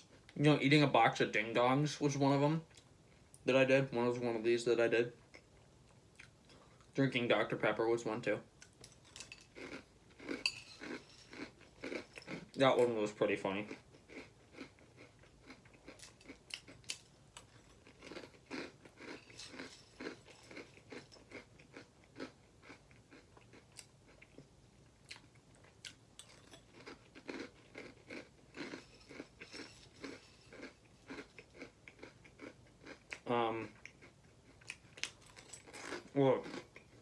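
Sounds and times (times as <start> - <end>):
crunchy cereal chewing: 8.6 - 37.0.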